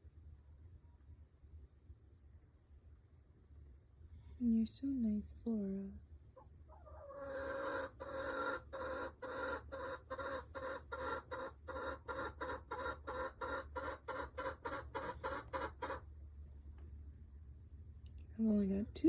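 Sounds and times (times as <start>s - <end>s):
hen clucking: 6.4s - 16.1s.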